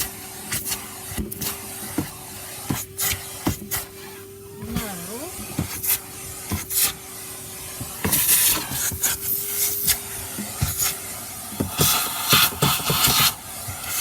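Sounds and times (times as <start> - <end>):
vacuum nozzle scraping: 0.0 - 14.0.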